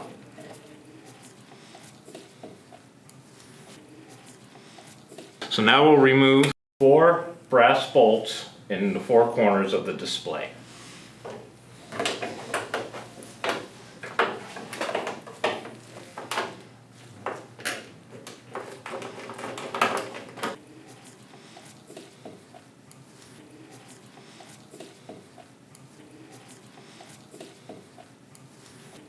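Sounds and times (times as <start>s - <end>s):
parts being handled: 10.9s - 29.0s.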